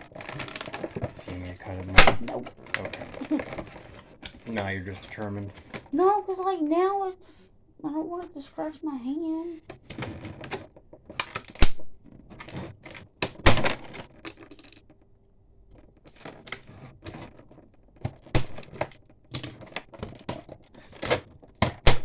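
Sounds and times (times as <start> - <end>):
plastic packaging crackling: 0.0 - 5.8.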